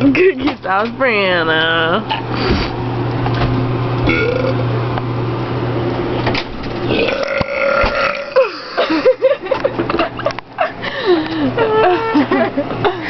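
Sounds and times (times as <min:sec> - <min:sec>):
person burping: 0:04.1 - 0:04.6, 0:06.9 - 0:08.8.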